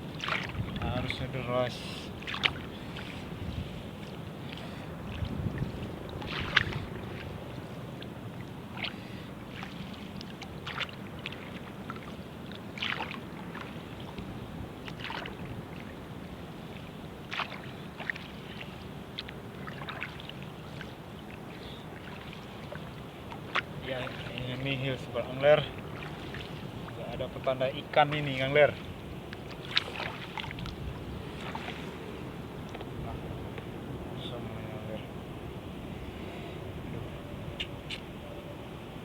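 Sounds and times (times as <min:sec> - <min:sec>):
water lapping: 0:00.0 - 0:39.0
small splashes and drips: 0:00.1 - 0:03.2, 0:04.0 - 0:31.8.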